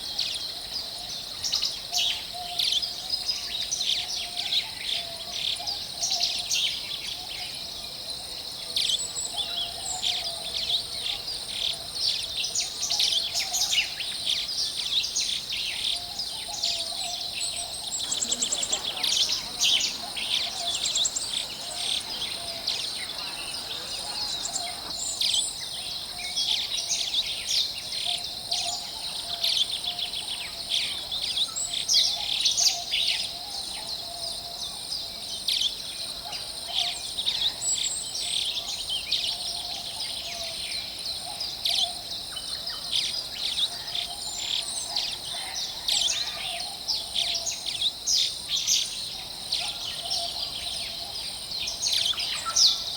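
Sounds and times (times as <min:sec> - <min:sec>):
birds singing and chirping: 0:16.5 - 0:25.8.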